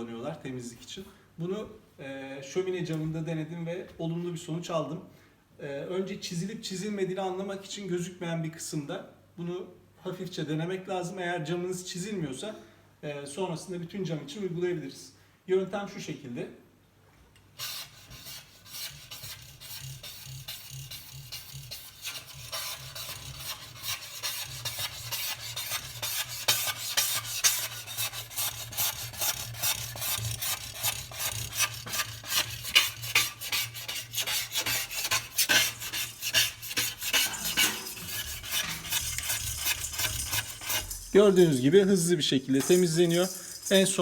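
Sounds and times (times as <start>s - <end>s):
scraper blade rasping on glass: 17.6s - 41.9s, 42.6s - 44.0s.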